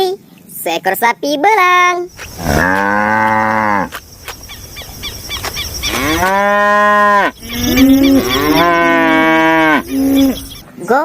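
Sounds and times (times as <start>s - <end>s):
cow mooing: 2.4s - 4.0s, 5.9s - 10.6s.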